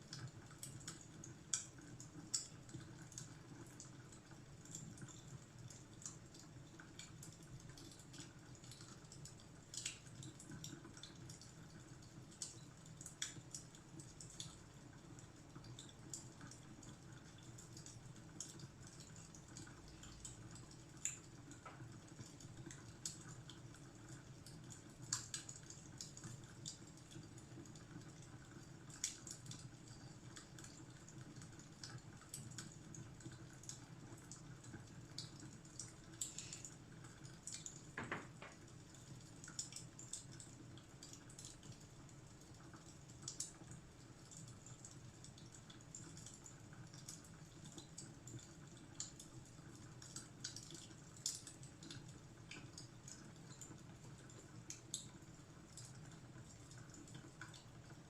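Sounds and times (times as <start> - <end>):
fireplace fire crackling: 0.1 - 58.0.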